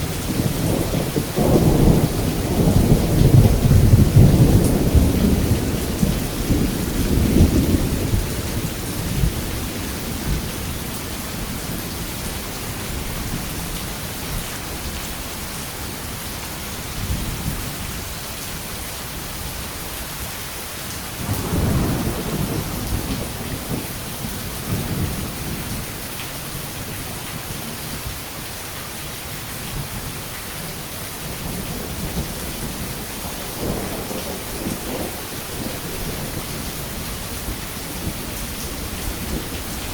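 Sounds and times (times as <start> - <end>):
rolling thunder: 0.0 - 11.8, 21.2 - 27.5, 31.2 - 39.9
steady rain falling: 0.0 - 39.9.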